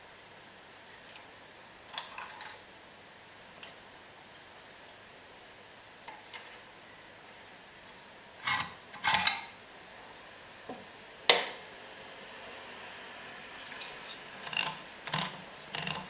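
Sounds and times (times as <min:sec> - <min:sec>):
hard parts scraping and rattling: 0:08.4 - 0:09.5, 0:13.6 - 0:16.0.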